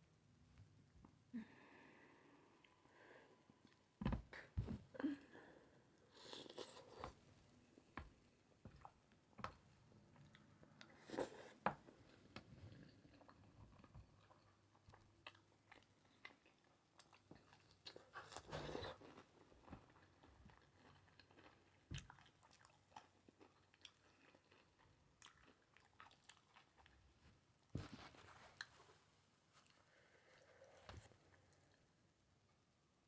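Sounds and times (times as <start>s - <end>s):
person chewing food: 8.8s - 31.9s.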